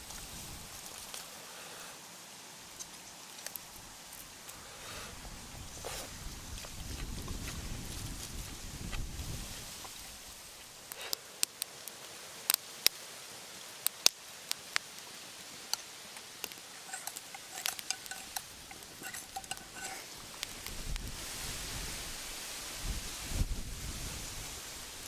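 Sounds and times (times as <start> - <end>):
campfire crackling and popping: 2.7 - 4.6, 5.2 - 13.0, 13.6 - 21.5.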